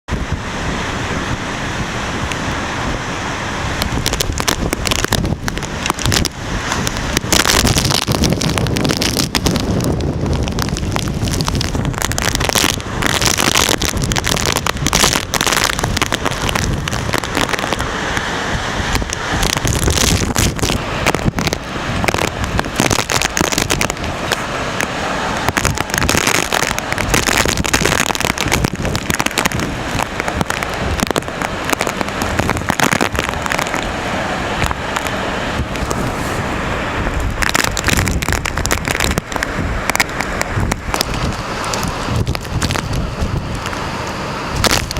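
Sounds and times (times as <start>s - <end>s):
strong wind buffeting microphone: 0.0s - 44.9s.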